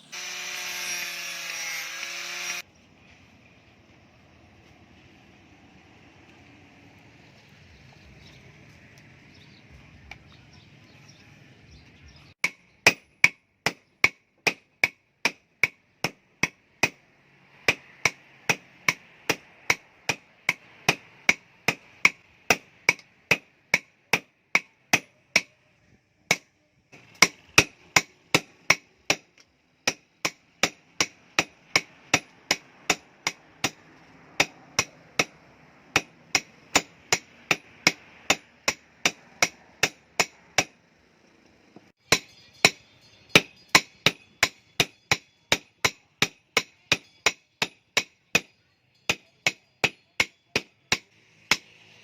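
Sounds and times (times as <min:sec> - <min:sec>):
hammer striking steel on anvil: 0:26.3 - 0:40.8, 0:42.0 - 0:51.9.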